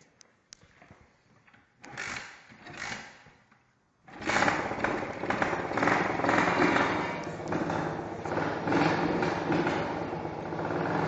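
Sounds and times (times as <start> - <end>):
small engine starting and running: 4.1 - 11.0.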